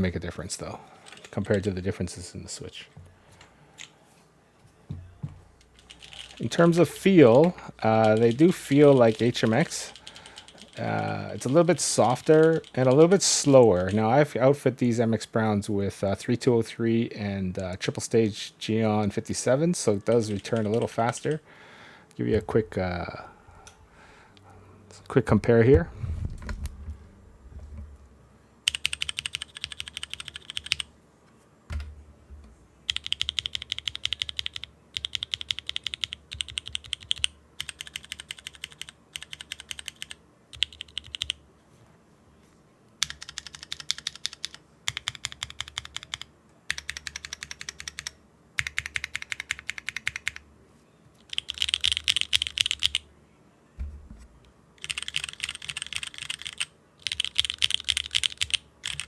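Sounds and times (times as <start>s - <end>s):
mechanical keyboard typing: 5.8s - 14.0s, 20.0s - 21.4s, 28.7s - 30.9s, 32.9s - 41.4s, 43.0s - 50.4s, 51.2s - 53.0s, 54.8s - 59.0s
low thump: 25.6s - 28.2s, 53.8s - 54.4s.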